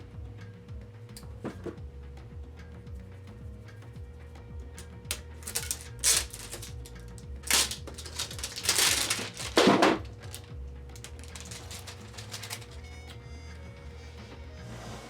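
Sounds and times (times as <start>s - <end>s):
plastic wrap crinkling and tearing: 5.1s - 13.1s.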